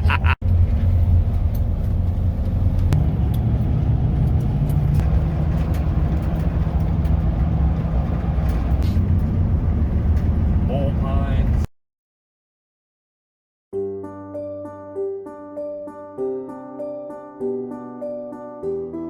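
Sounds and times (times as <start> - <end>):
vehicle engine and road rumble: 0.0 - 11.7.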